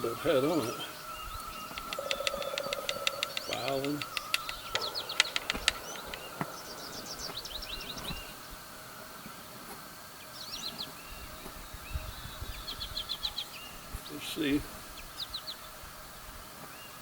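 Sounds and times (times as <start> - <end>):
faint insect drone: 0.0 - 17.0
small bird chirping: 0.3 - 8.6.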